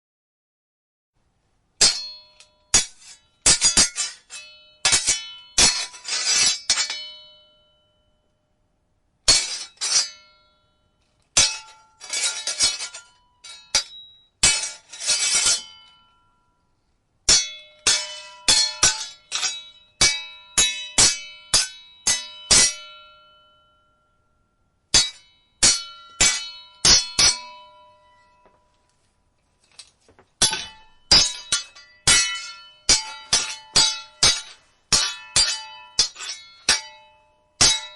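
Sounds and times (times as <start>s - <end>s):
sword blades clashing: 1.8s - 7.4s, 9.3s - 10.4s, 11.4s - 16.1s, 17.3s - 23.2s, 24.9s - 28.4s, 30.4s - 37.9s.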